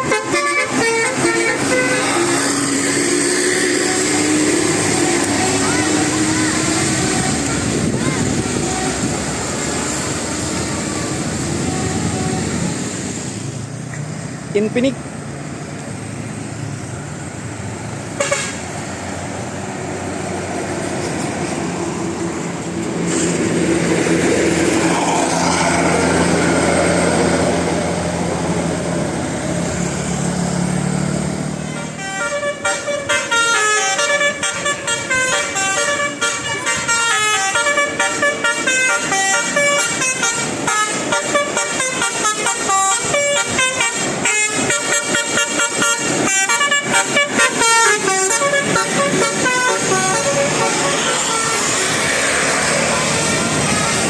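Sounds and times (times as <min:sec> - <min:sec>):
multi-tone bus horn tune: 0:00.0 - 0:13.2, 0:18.1 - 0:18.9, 0:31.6 - 0:54.0
bus engine running: 0:00.0 - 0:54.0.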